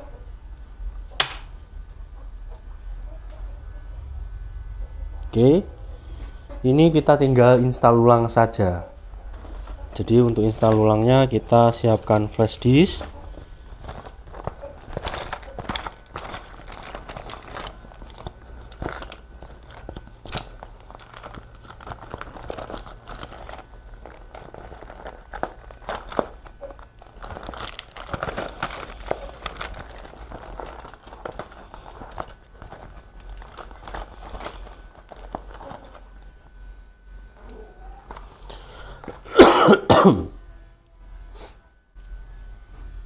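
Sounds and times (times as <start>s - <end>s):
faint steady hum: 0.0s - 43.0s
rustling and crinkling: 4.9s - 39.3s.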